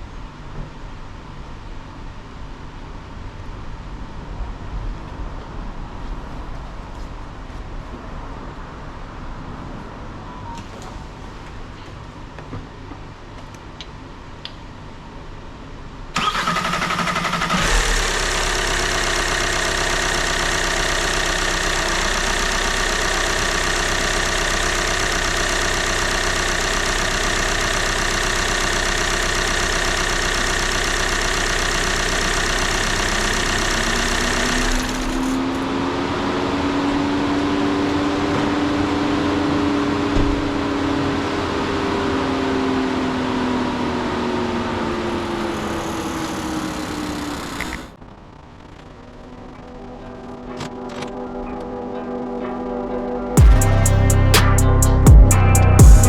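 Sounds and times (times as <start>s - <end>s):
diesel engine cranking and running: 16.2s - 35.6s, 45.0s - 48.0s, 53.4s - 56.0s
rising and falling tone: 48.6s - 56.0s.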